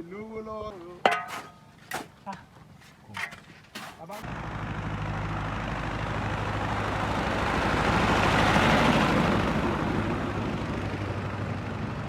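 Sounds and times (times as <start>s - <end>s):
road and wind noise: 4.2s - 12.0s
vehicle engine running: 4.2s - 12.0s.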